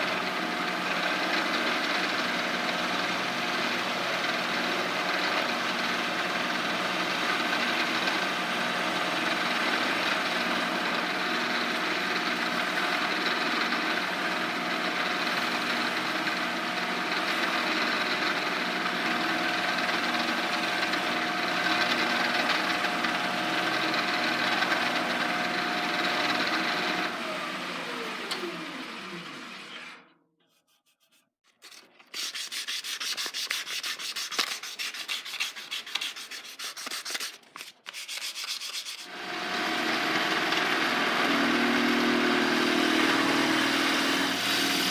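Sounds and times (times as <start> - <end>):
electric power tool whine: 0.0 - 30.2, 39.1 - 44.9
wood sanded against machine: 0.5 - 29.5, 32.1 - 44.9
hand sanding wood: 30.4 - 39.2.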